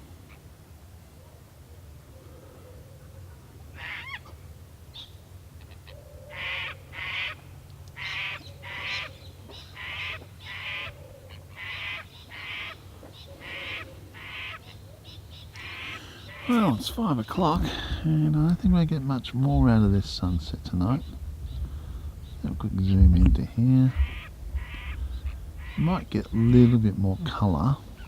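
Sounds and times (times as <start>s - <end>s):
steady low hum: 0.0s - 28.0s
bird calling harsh paired notes: 3.8s - 18.1s, 18.7s - 28.0s.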